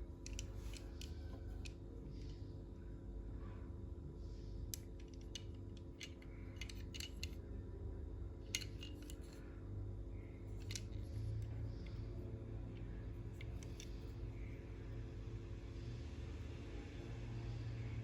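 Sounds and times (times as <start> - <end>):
steady low hum: 0.0 - 18.0
plastic toy and packaging clicks: 4.8 - 7.4, 8.5 - 9.4, 10.6 - 11.1.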